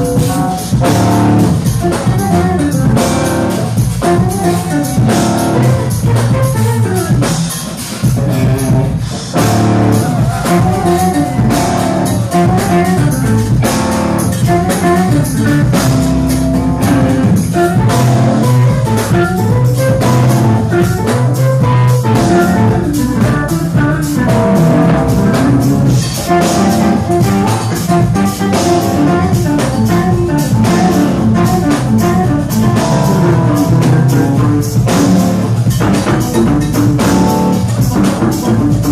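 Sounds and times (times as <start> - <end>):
drum kit: 0.0 - 38.9
electric guitar: 0.0 - 38.9
jazz fusion band playing: 0.0 - 38.9.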